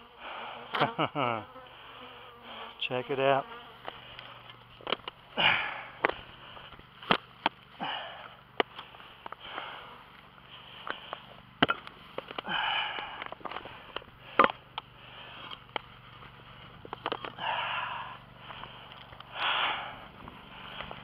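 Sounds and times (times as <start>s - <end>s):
handling clicks and knocks: 4.1s - 5.2s, 10.8s - 17.4s
breathy puffs of air: 17.4s - 21.0s.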